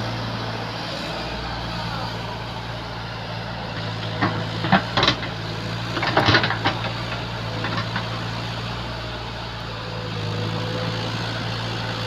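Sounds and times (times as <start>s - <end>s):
backhoe engine running: 0.0s - 12.0s
metal clanks and scrapes: 3.8s - 8.2s.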